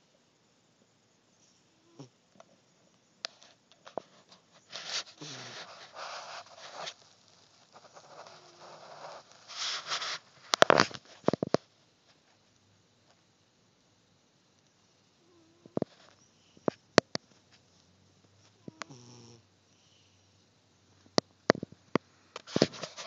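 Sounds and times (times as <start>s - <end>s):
cat snoring: 1.7s - 2.5s, 5.1s - 6.6s, 8.0s - 9.3s, 15.2s - 16.6s, 18.6s - 20.2s.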